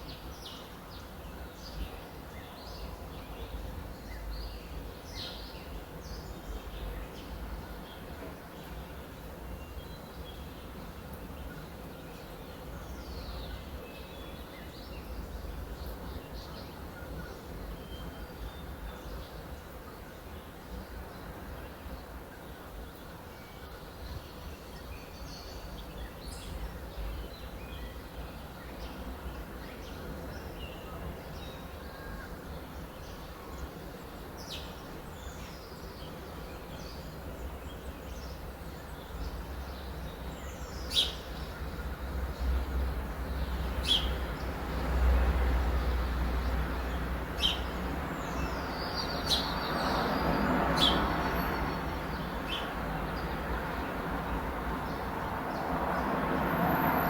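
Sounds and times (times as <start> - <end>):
birds chirping and calling: 43.7 - 44.2, 47.4 - 53.4.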